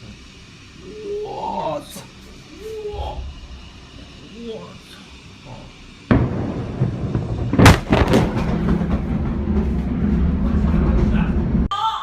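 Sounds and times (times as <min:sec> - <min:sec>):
low rumble: 0:02.9 - 0:04.4, 0:05.8 - 0:11.7
sharp loud cracks: 0:06.1 - 0:11.3
deep explosion boom: 0:06.1 - 0:11.7.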